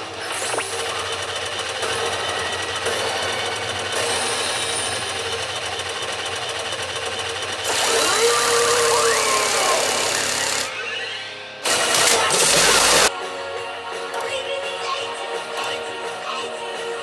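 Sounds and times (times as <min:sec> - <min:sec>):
pachinko balls rattling: 0:00.0 - 0:10.8, 0:11.6 - 0:13.1.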